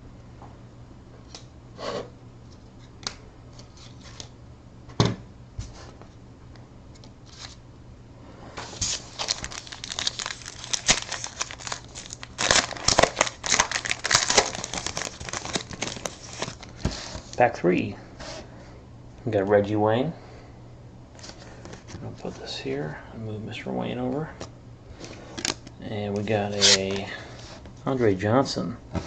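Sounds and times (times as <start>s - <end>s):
wrapper crinkling and tearing: 8.7s - 17.3s, 26.4s - 27.0s.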